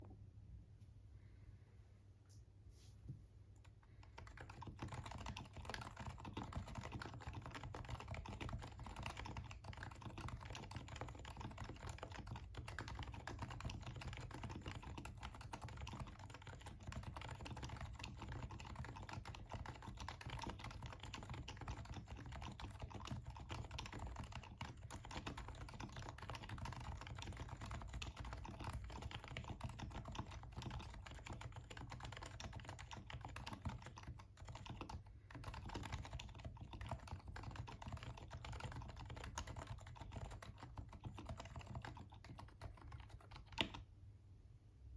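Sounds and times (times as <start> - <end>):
rapid typing on a keyboard: 3.6 - 43.9.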